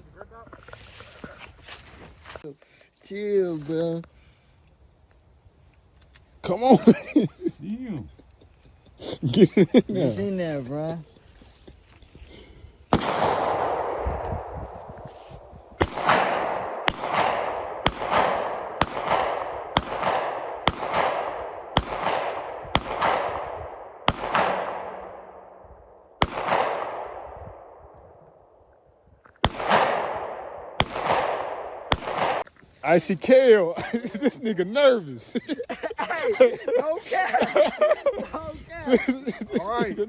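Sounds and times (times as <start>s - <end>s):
suppressed pistol shots echoing: 12.9s - 25.6s, 26.2s - 28.5s, 29.4s - 32.4s.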